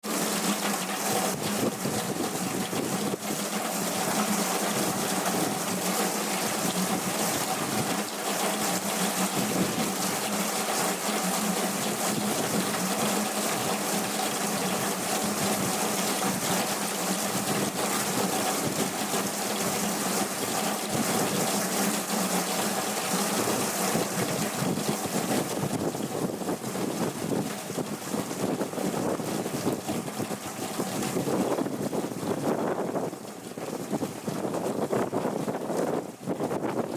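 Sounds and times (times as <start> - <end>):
heavy rain pouring: 0.1 - 26.4.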